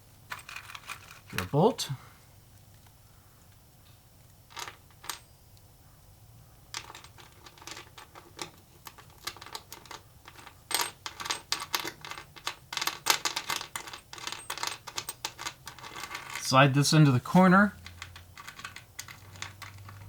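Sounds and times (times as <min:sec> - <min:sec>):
metal hardware clinking and rattling: 0:00.3 - 0:01.6, 0:04.5 - 0:05.3, 0:06.7 - 0:20.0.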